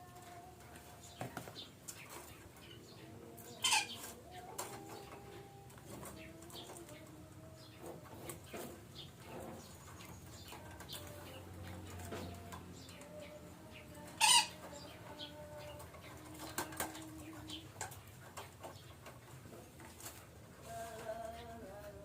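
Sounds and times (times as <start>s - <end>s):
parakeets calling: 2.4s - 5.1s, 9.0s - 15.8s.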